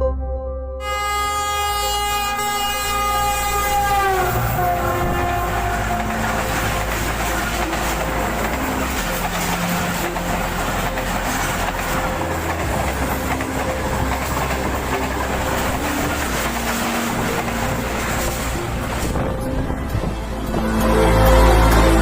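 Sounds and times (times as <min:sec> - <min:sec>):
train running gear rumble: 0:01.8 - 0:22.0
train wheels clicking over rail joints: 0:03.3 - 0:20.2.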